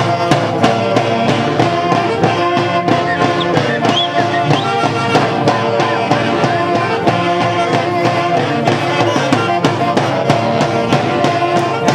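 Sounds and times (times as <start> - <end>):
held melody notes: 0.0 - 11.9
steady drum beat: 0.0 - 11.9.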